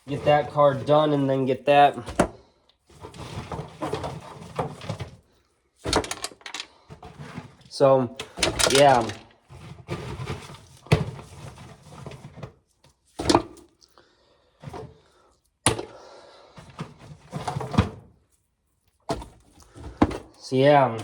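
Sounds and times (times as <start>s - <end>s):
dried corn rustling and scraping: 0.0s - 1.9s, 8.7s - 10.7s.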